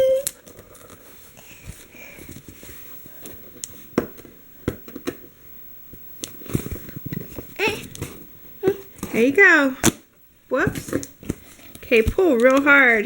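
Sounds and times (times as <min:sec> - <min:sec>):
packaging crackling and clicking: 0:10.6 - 0:13.0.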